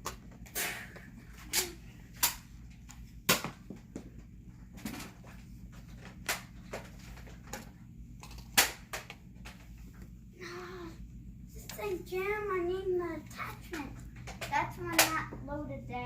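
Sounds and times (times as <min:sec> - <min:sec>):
darts striking things: 0:03.2 - 0:03.7.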